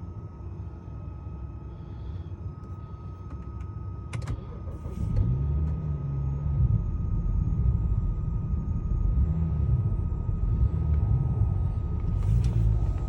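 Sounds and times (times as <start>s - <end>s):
car engine idling roughly: 9.9s - 13.0s.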